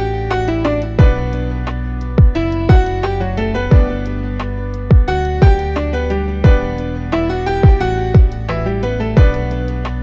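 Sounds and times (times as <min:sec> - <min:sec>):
deep drum thumps: 0:01.0 - 0:01.4, 0:02.2 - 0:03.1, 0:03.7 - 0:04.1, 0:04.9 - 0:05.8, 0:06.4 - 0:06.8, 0:07.5 - 0:08.5, 0:09.2 - 0:09.6.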